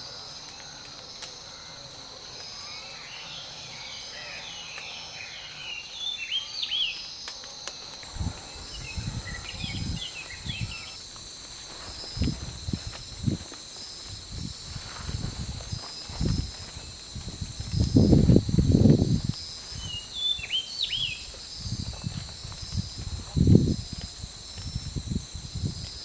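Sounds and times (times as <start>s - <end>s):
songbirds chirping: 0.0s - 11.0s, 19.6s - 21.7s
insects droning: 0.0s - 26.0s
low thuds and rumbles: 8.1s - 10.7s.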